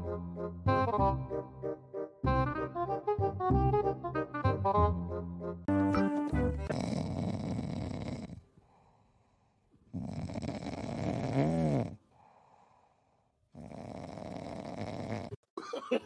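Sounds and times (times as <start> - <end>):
pet snoring: 6.7 - 8.6, 9.8 - 12.6, 13.5 - 15.4
faint breathing: 8.3 - 9.8, 12.0 - 13.4.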